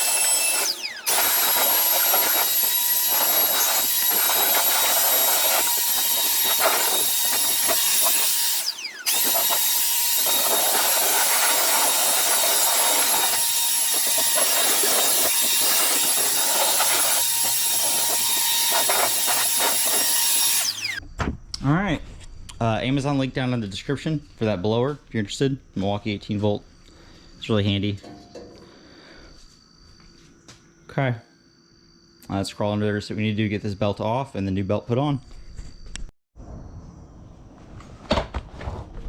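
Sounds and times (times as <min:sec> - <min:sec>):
leaf blower motor whine: 0:00.0 - 0:21.0.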